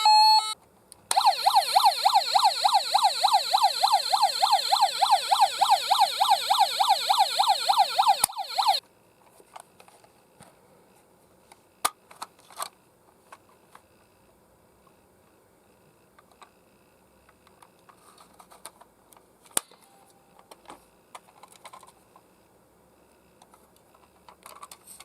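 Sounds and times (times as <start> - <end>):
toy siren yelping: 0.0 - 8.8.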